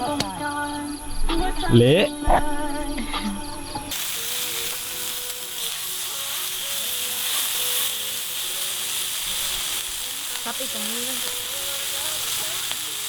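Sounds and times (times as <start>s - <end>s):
food sizzling in a hot pan: 3.9s - 13.0s.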